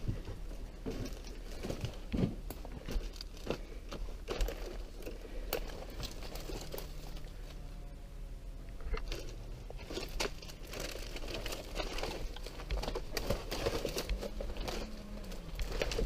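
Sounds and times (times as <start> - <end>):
footsteps crunching dry leaves: 9.2 - 16.0.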